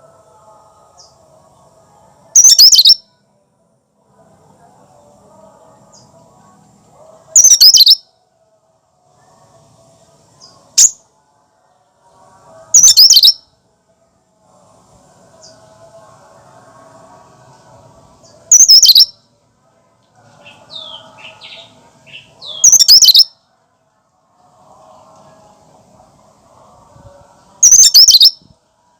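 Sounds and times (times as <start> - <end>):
bird singing rapid high chattering: 2.4 - 3.0, 7.4 - 8.0, 12.8 - 13.4, 18.5 - 19.1, 20.4 - 23.3, 27.6 - 28.4.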